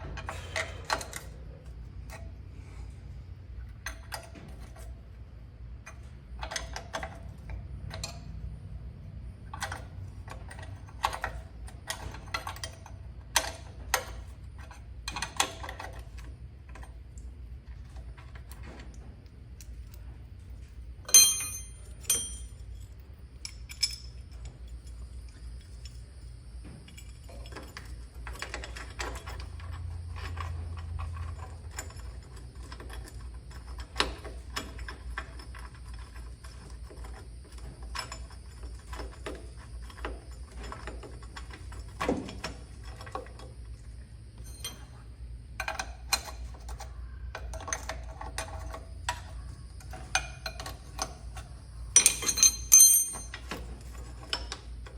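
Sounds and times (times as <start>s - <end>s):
steady low hum: 0.0s - 54.9s
metal tools clinking: 21.0s - 26.0s, 44.4s - 54.9s.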